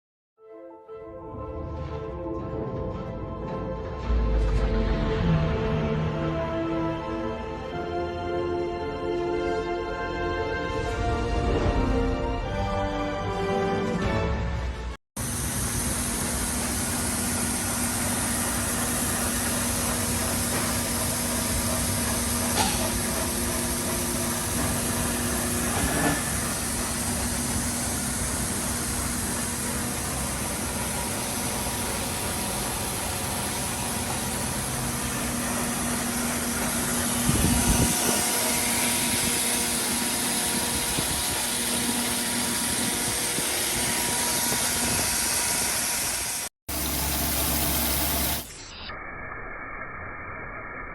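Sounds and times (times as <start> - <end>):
grinding machine motor hum: 15.2 - 48.5.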